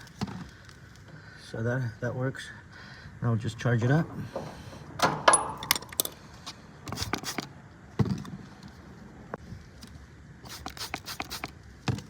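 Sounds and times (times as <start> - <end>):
metal tools clinking: 3.8 - 6.3.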